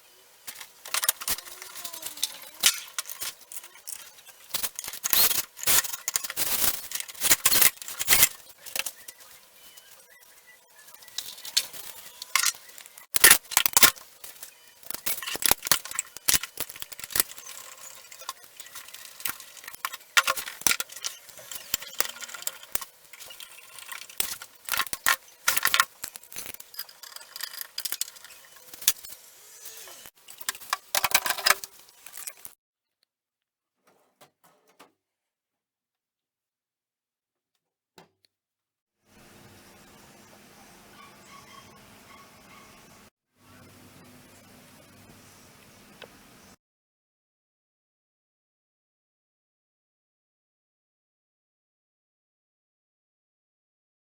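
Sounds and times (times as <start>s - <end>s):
desk parts clicking and rattling: 0.5s - 9.2s, 14.9s - 29.1s, 30.3s - 32.5s.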